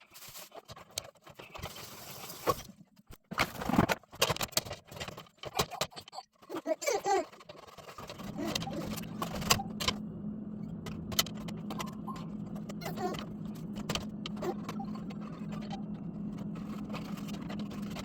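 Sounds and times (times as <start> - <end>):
low motor hum: 8.0 - 18.0.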